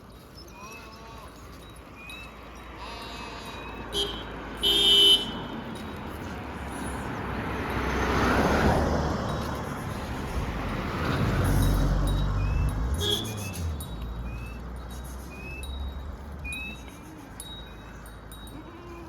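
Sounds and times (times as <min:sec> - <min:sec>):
vehicle passing by: 0:02.3 - 0:19.0
vehicle horn tooting: 0:03.0 - 0:05.6, 0:12.9 - 0:13.8.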